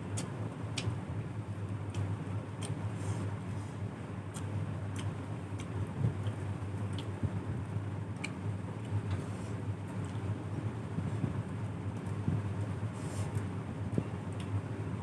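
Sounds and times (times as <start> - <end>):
wet chewing clicks: 1.9 - 2.9, 4.3 - 7.3, 8.1 - 9.2.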